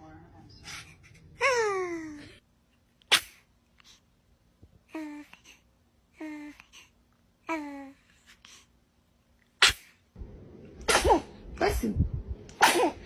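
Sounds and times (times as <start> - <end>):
baby sneezing: 3.0 - 3.5, 9.6 - 10.0, 10.9 - 11.8, 12.5 - 13.0.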